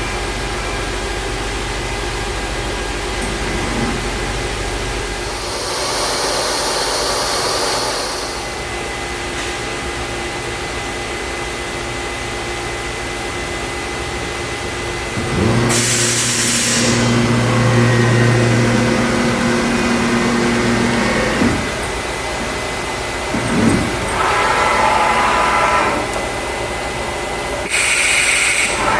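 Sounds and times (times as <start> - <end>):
loud motor running: 1.4 - 9.1, 14.8 - 28.9
air hissing: 5.2 - 8.6, 15.7 - 17.2, 27.6 - 28.9
router motors humming: 15.2 - 27.8.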